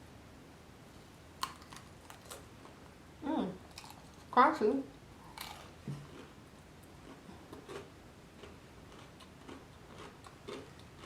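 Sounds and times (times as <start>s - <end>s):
person chewing crispy food: 1.4s - 2.5s, 3.7s - 4.4s, 5.2s - 11.0s.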